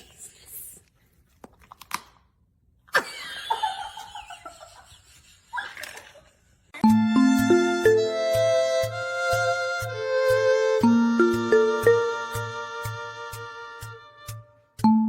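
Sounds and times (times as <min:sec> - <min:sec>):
plucked string music: 0:06.8 - 0:14.9.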